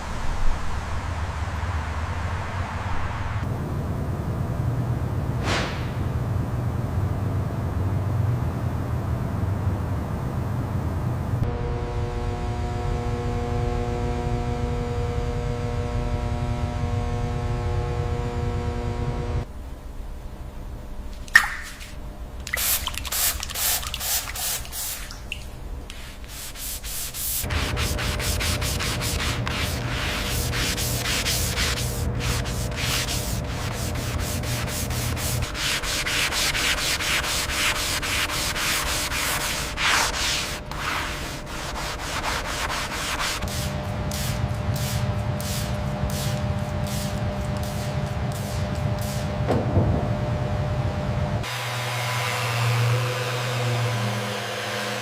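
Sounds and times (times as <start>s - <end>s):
faint steady hum: 6.0s - 51.5s
sanding strokes on a surface: 25.9s - 49.3s.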